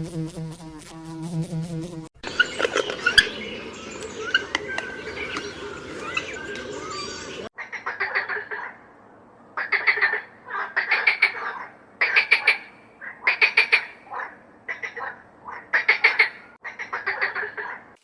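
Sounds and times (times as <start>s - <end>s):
buzzing insect: 0.0s - 2.1s
mixed chirps and calls: 2.2s - 8.8s.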